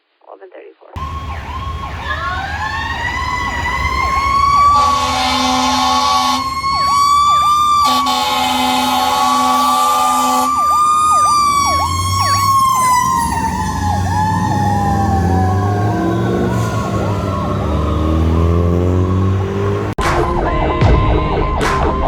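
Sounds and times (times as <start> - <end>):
mechanical siren winding down: 1.0 - 19.9
diesel engine running: 1.0 - 20.0
electronic siren yelping: 1.0 - 21.6
steady horn-like tone: 4.6 - 6.8, 7.8 - 10.6.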